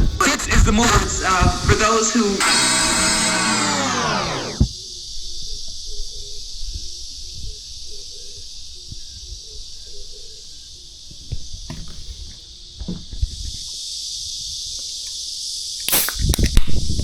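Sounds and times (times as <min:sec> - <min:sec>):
insects buzzing: 0:00.0 - 0:05.0.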